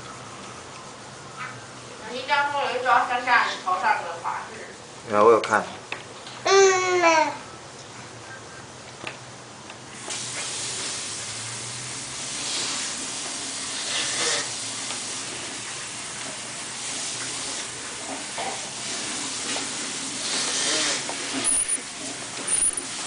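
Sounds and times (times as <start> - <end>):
robot vacuum running hiss: 20.1 - 21.8, 22.4 - 23.0.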